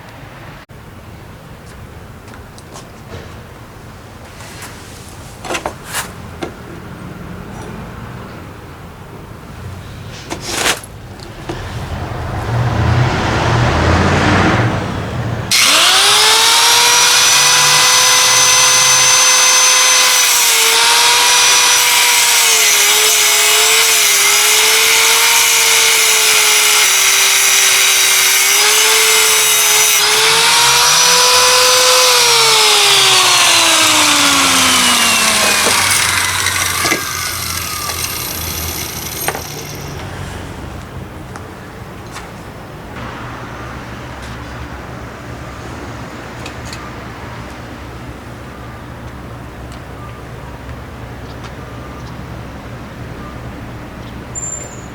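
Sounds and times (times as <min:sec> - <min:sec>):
power tool motor whining: 0:15.5 - 0:40.2.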